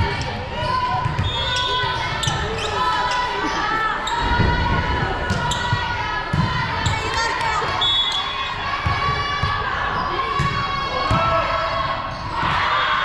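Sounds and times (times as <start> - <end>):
crowd voices: 0.0 - 13.0
shoes squeaking on floor: 0.7 - 4.3.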